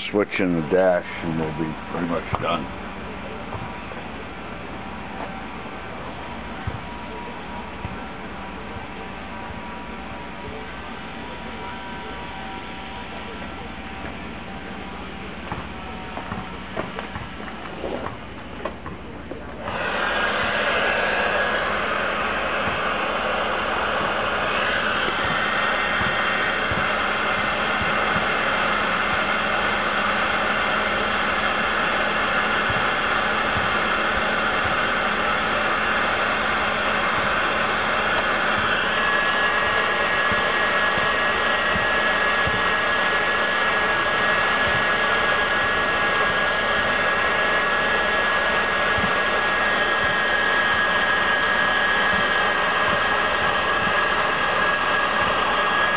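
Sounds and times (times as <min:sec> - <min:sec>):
heat gun blowing: 0:19.6 - 0:55.9.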